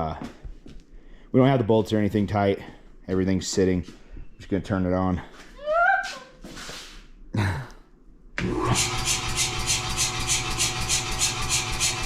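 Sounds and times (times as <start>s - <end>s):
power hammer motor pulsing: 8.4s - 12.0s.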